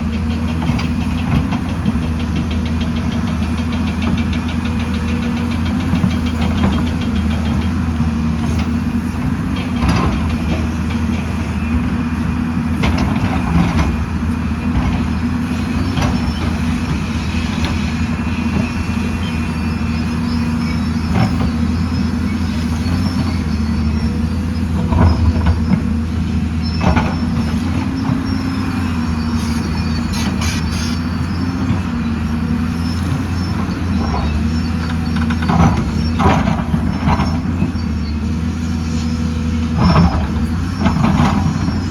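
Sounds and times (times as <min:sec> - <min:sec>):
diesel engine under load: 0:00.0 - 0:41.9
thin high squeaks: 0:29.3 - 0:31.4.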